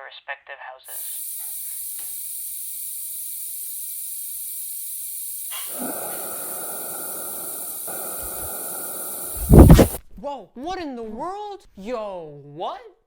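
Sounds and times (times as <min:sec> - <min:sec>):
steady hiss: 0:00.9 - 0:10.0.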